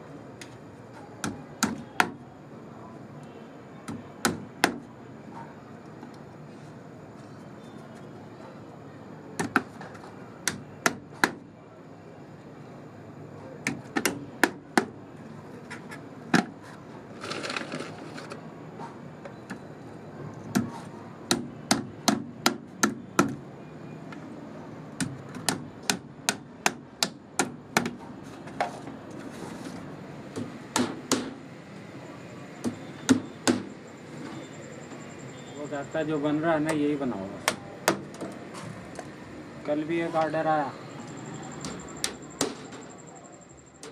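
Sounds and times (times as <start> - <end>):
hammer driving nails into wood: 30.4 - 31.4.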